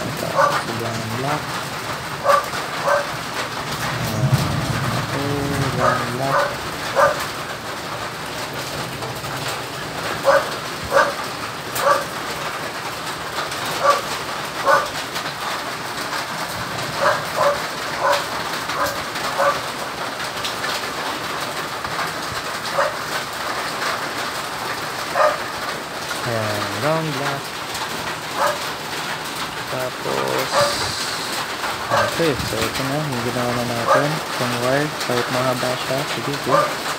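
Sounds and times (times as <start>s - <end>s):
dog yapping: 0.3s - 0.7s, 2.2s - 3.2s, 5.8s - 7.3s, 10.2s - 11.2s, 11.8s - 12.1s, 13.8s - 15.0s, 17.0s - 19.7s, 22.7s - 23.0s, 25.1s - 25.5s, 28.4s - 28.7s, 31.9s - 32.2s, 36.5s - 36.8s
steady hiss: 29.6s - 36.4s.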